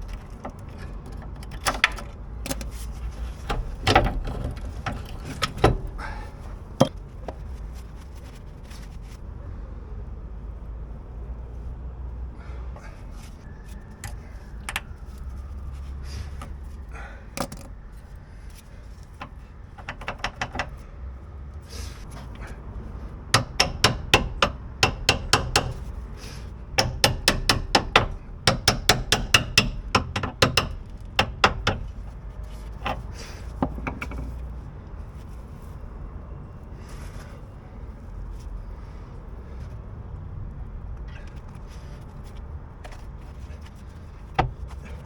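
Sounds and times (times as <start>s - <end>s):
hammer striking metal: 23.4s - 25.8s, 26.8s - 31.9s.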